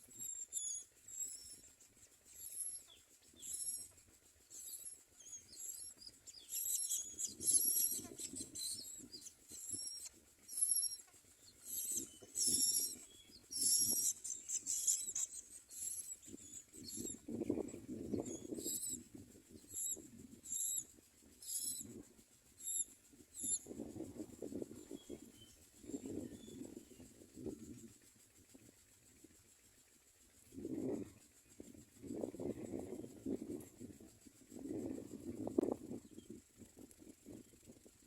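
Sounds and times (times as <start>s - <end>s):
nestlings begging calls: 0.1s - 1.7s, 2.3s - 17.2s, 18.2s - 19.0s, 19.7s - 20.8s, 21.4s - 21.8s, 22.6s - 23.6s.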